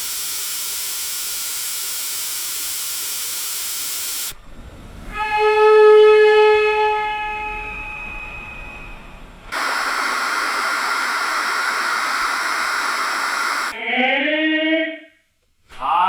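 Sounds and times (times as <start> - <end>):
loud steady hiss: 0.0 - 4.4, 9.6 - 13.8.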